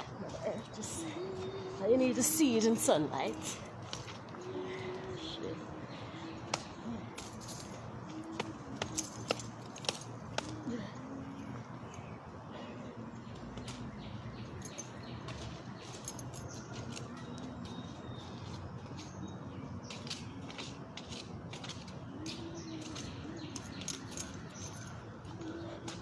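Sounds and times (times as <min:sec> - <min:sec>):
outdoor background hiss: 0:00.0 - 0:26.0
dove cooing: 0:22.1 - 0:26.0.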